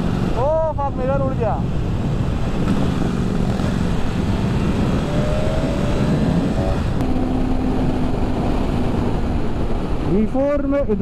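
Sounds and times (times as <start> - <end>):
wind and road noise: 0.0 - 11.0
motorcycle engine running: 1.7 - 10.1.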